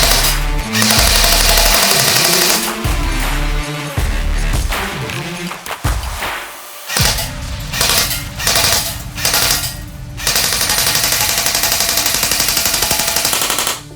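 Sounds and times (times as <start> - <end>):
airsoft gun firing bursts: 0.0 - 2.8, 6.9 - 13.9.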